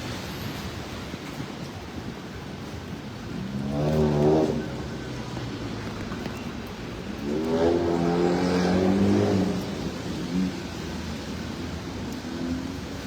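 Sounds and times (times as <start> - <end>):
rain on wet street: 0.0 - 13.0
vehicle engine accelerating past: 3.5 - 4.8, 7.2 - 10.8.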